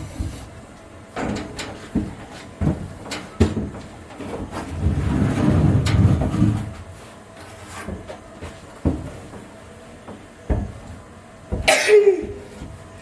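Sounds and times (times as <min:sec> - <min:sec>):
wooden knocks and thumps: 0:01.2 - 0:06.9, 0:07.8 - 0:09.5, 0:10.1 - 0:12.8.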